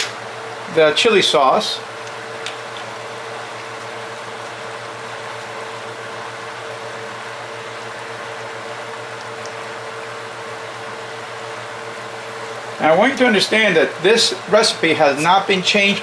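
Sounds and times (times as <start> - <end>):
exhaust fan hiss: 0.0 - 16.0.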